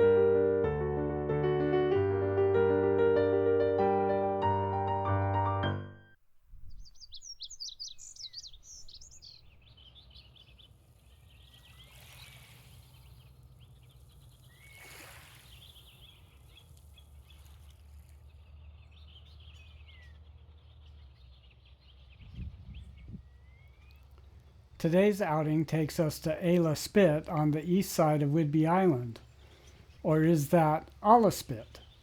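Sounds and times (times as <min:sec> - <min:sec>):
small birds chirping: 0:06.5 - 0:32.0.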